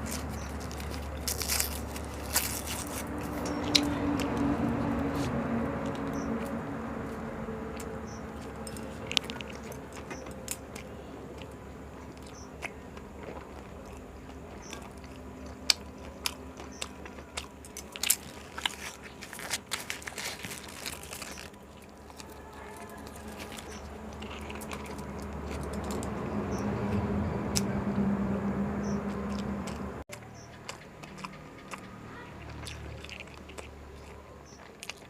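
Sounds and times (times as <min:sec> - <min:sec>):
wrapped roll crackling: 0:00.0 - 0:03.8, 0:16.9 - 0:26.2
chewing and biting food: 0:00.0 - 0:27.7, 0:28.8 - 0:35.0.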